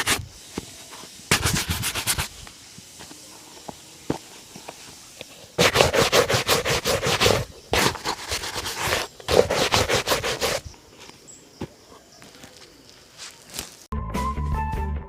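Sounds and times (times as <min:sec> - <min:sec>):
buffing strokes on leather shoe: 0:00.0 - 0:10.7.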